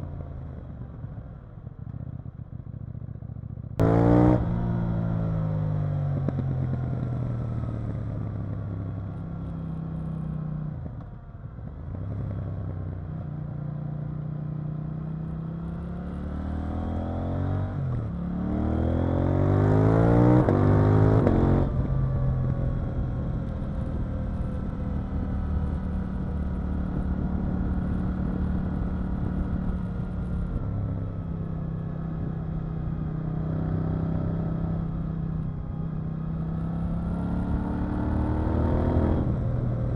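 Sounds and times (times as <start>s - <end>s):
motorcycle engine revving: 3.8s - 10.3s, 14.9s - 39.9s.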